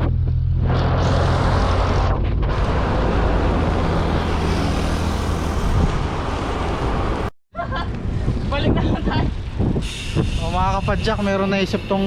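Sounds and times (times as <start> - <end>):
vehicle engine humming: 0.0 - 7.3
wind rushing over microphone: 0.0 - 11.8.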